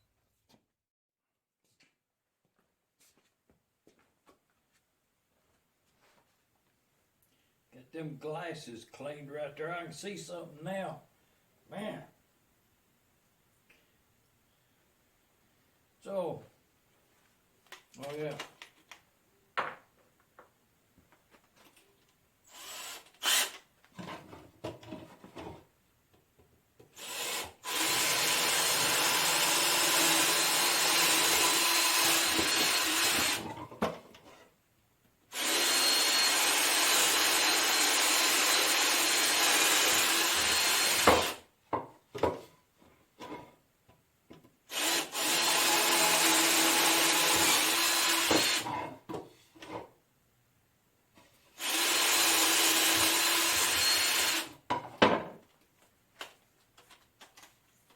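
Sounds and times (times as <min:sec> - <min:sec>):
power tool cutting metal: 0:35.4 - 0:41.4, 0:51.7 - 0:54.5.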